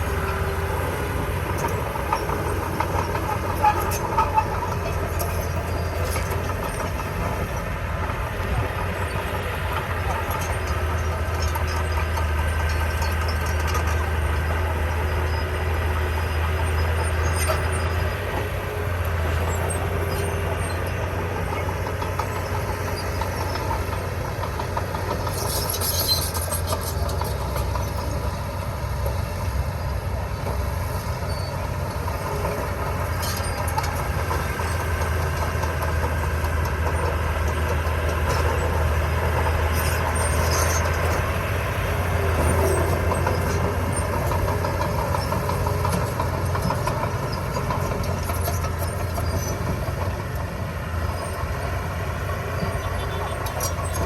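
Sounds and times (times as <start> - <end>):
diesel engine droning: 0.0 - 54.0.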